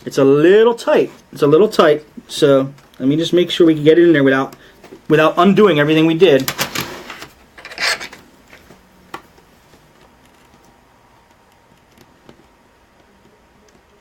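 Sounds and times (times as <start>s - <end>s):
metal part scraping: 7.0s - 8.2s.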